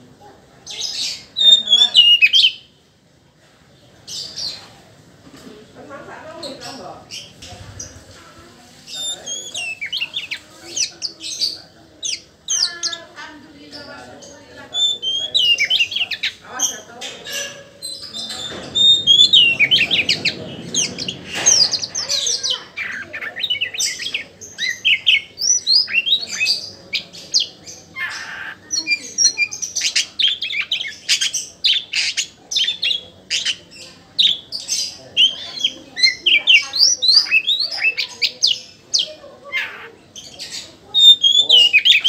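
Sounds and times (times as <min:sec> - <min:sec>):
low rough noise: 0:07.1 - 0:10.3, 0:16.3 - 0:23.8
bird singing whistled notes: 0:18.2 - 0:20.2.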